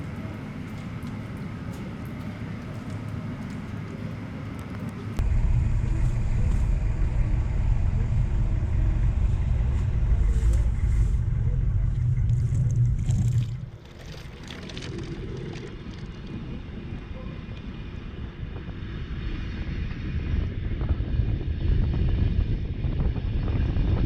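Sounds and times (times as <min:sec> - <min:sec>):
loud low hum: 0:00.0 - 0:13.7, 0:16.3 - 0:24.0
train wheels rumbling on rail: 0:00.0 - 0:13.7
wind noise on microphone: 0:05.2 - 0:13.8, 0:14.7 - 0:24.0.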